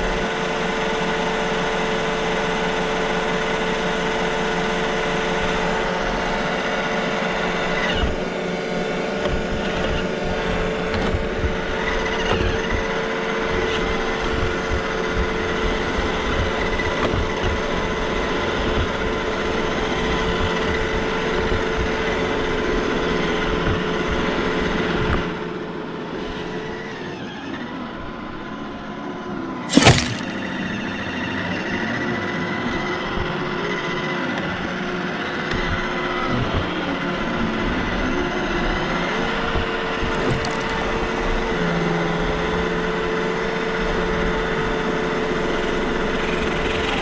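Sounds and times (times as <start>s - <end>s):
sharp loud knock: 29.7s - 30.6s.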